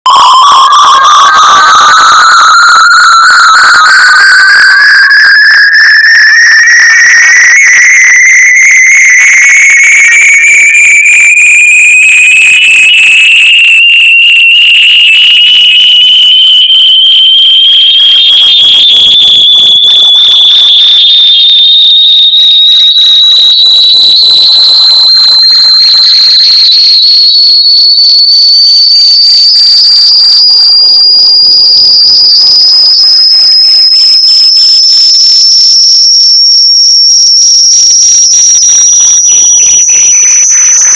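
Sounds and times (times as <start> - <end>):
rising electronic finder tone: 0.0 - 18.6.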